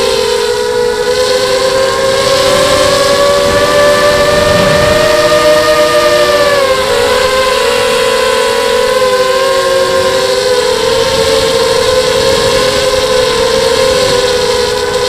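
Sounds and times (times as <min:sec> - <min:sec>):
quadcopter motors whining: 0:00.0 - 0:15.0.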